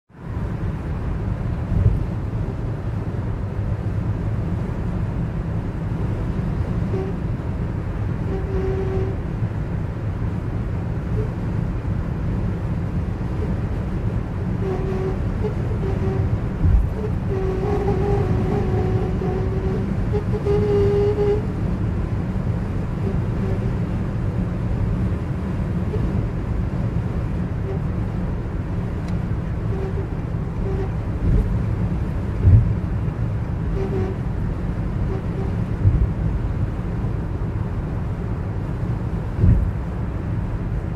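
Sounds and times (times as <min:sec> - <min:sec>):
car road rumble: 0:00.1 - 0:40.9
heavy low thumps: 0:32.4 - 0:32.8.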